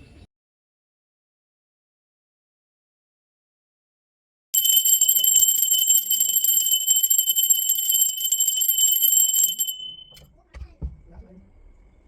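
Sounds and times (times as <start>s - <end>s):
brass hand bell ringing: 4.6s - 10.2s.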